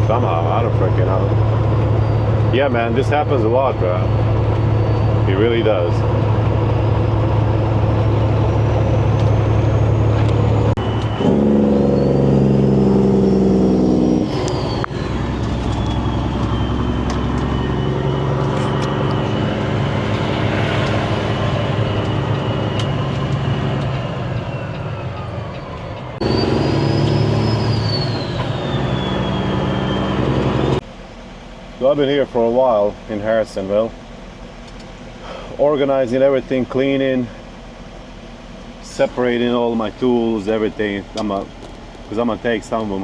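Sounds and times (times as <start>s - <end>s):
truck engine running: 0.0s - 43.0s
thin high whistle: 10.8s - 19.7s, 24.4s - 30.8s.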